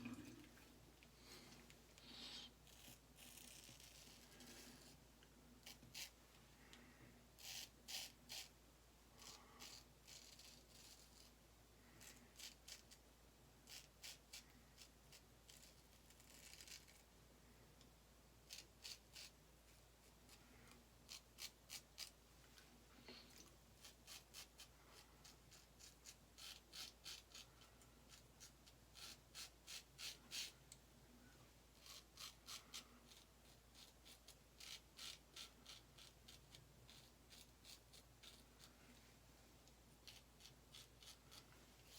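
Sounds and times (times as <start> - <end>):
razor scraping stubble: 2.1 - 5.0, 5.6 - 6.2, 7.4 - 8.5, 9.2 - 11.3, 13.6 - 17.0, 18.5 - 20.4, 21.1 - 22.2, 31.8 - 38.7, 40.0 - 41.9.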